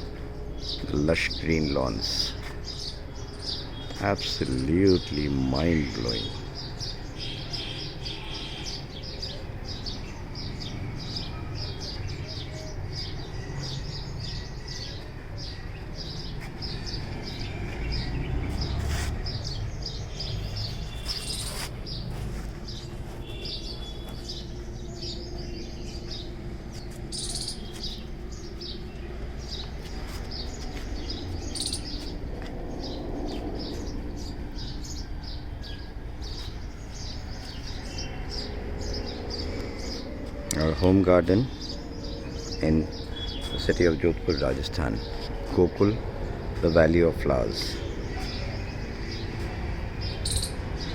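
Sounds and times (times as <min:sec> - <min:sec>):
small birds chirping: 0:00.0 - 0:50.9
sharp high bird calls: 0:27.1 - 0:29.0, 0:30.2 - 0:32.2, 0:47.5 - 0:50.7.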